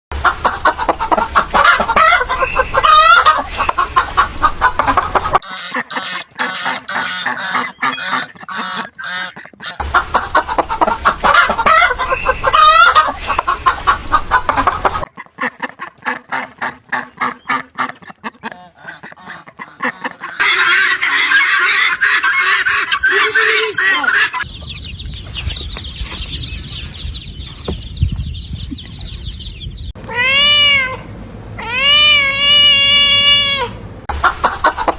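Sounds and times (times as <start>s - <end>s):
geese honking: 0.2s - 27.8s
chickens clucking: 0.2s - 30.0s, 34.1s - 34.9s.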